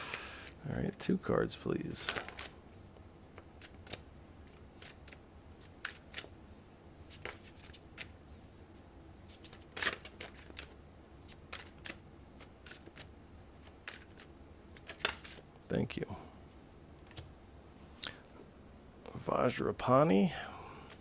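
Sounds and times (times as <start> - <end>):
cards being shuffled: 1.9 - 6.4, 7.0 - 8.2, 9.2 - 15.5.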